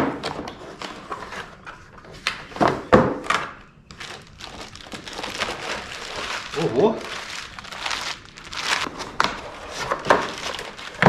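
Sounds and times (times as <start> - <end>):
packing rustling: 3.9 - 11.0.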